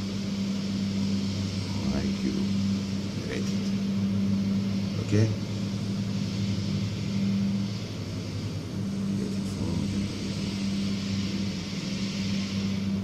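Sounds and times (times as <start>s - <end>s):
steady low hum: 0.0s - 13.0s
even hiss: 4.6s - 13.0s.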